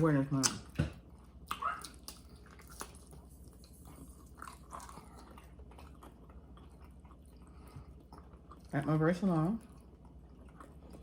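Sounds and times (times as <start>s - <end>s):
person chewing food: 0.4s - 11.0s.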